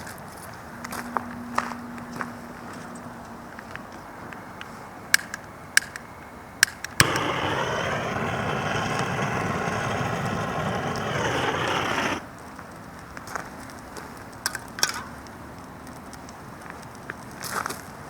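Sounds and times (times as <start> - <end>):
gas torch flame hissing: 7.0 - 12.3.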